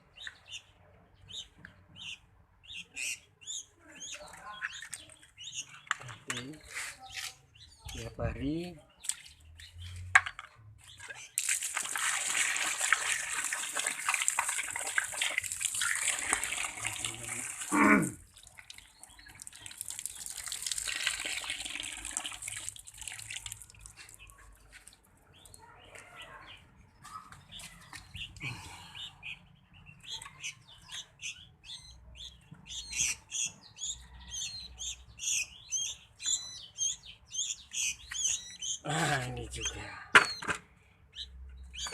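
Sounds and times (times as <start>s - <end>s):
small bird chirping rapidly: 0.0s - 11.5s, 22.5s - 40.4s.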